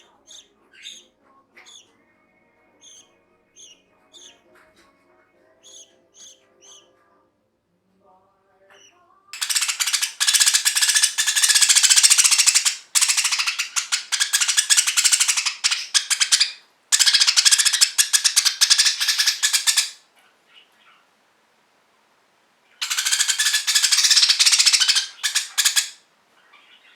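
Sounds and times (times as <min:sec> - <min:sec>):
budgerigar rasping screech: 0:09.4 - 0:20.0, 0:22.8 - 0:26.0.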